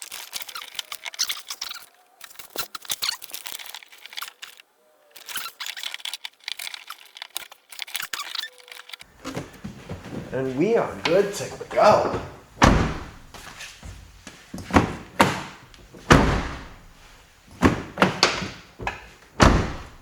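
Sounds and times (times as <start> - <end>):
duct tape tearing and crackling: 0.0 - 4.6, 5.2 - 9.1.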